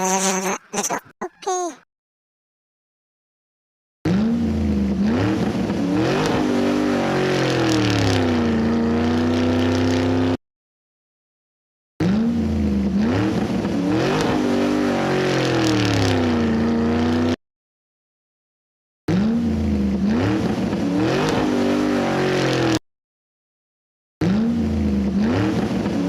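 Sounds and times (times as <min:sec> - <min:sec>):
motor vehicle engine revving: 0:04.1 - 0:10.4, 0:12.0 - 0:17.4, 0:19.1 - 0:22.8, 0:24.2 - 0:26.0.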